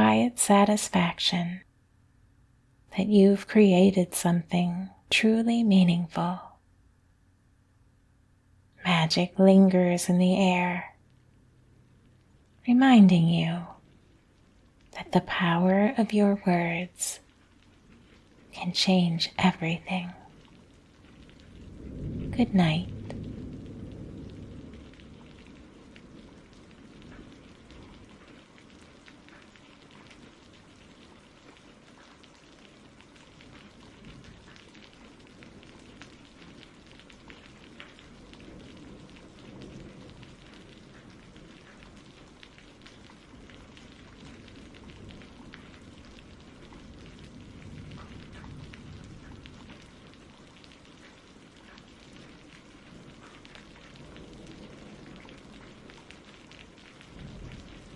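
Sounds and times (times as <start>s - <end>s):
rain falling: 0.0s - 2.0s, 2.7s - 57.9s
low rumble: 21.0s - 27.6s.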